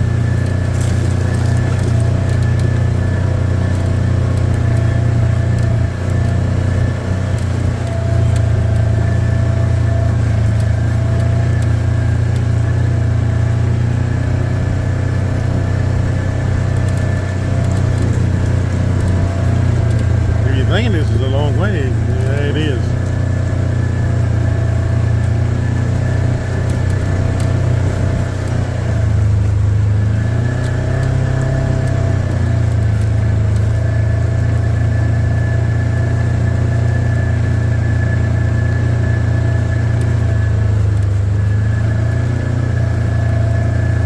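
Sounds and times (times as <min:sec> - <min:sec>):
vehicle engine humming: 0:00.0 - 0:44.0.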